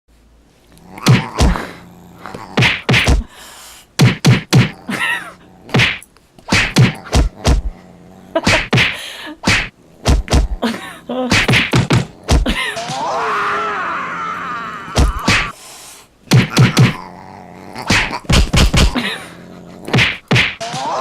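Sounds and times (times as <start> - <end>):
punch and whack hits: 1.1 - 1.6, 2.6 - 3.3, 4.0 - 4.7, 5.8 - 7.6, 8.5 - 10.6, 11.3 - 12.6, 15.0 - 15.5, 16.3 - 17.0, 17.9 - 19.0, 19.9 - 20.7.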